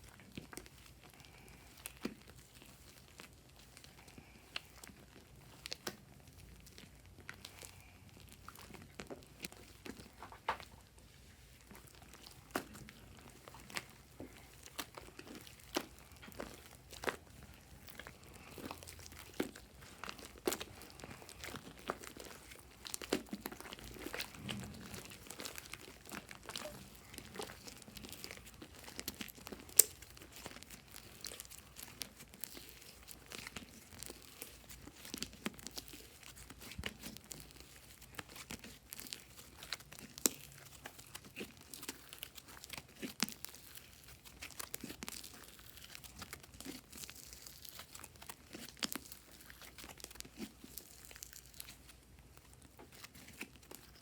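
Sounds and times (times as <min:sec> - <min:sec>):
slime crackling and popping: 0:00.0 - 0:54.0
slime snapping: 0:19.3 - 0:34.1.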